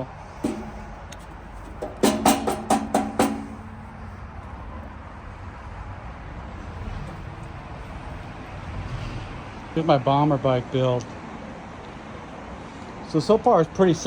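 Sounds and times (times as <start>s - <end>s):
low outdoor rumble: 0.0s - 8.8s
sharp ringing knocks: 0.4s - 4.2s.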